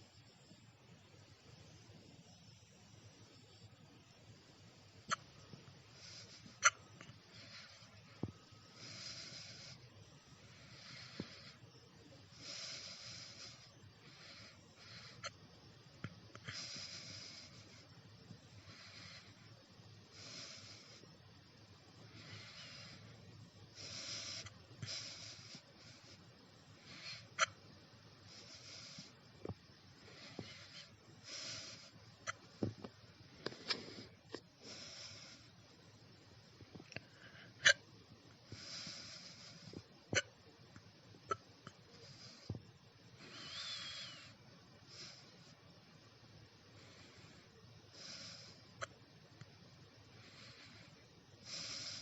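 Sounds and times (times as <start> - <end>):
wheezy breathing hiss: 0.0 - 52.0.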